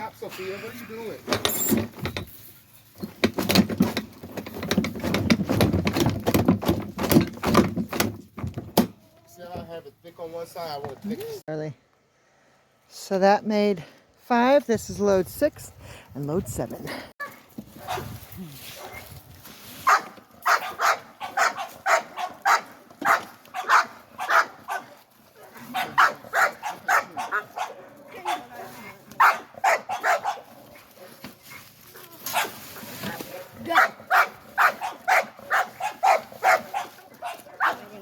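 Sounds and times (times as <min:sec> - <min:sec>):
wood chips rustling and scraping: 0:17.3 - 0:26.1, 0:30.0 - 0:38.0
dog yapping: 0:19.9 - 0:30.6, 0:32.0 - 0:32.6, 0:33.7 - 0:37.9.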